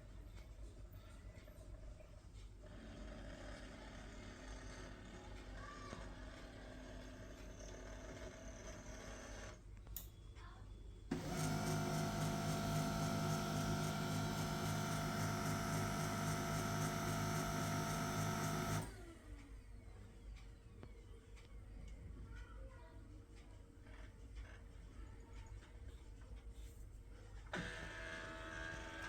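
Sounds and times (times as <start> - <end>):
printer click: 11.1 - 19.0
printer motor whirring: 11.1 - 19.2, 27.5 - 29.0.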